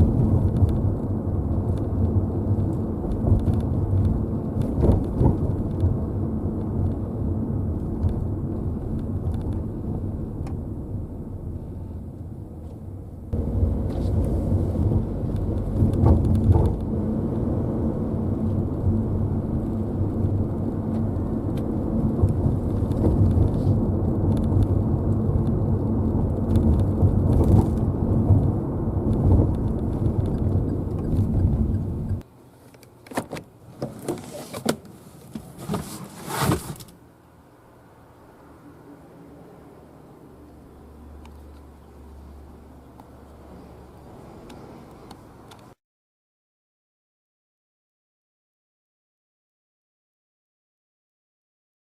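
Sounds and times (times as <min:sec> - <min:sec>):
road rumble in car cabin: 0:00.0 - 0:32.3.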